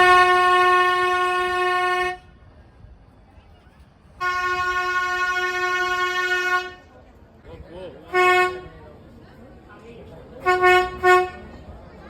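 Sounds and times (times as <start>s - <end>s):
locomotive horn blasts: 0.0s - 2.4s, 4.2s - 6.9s, 8.1s - 8.8s, 10.4s - 11.6s.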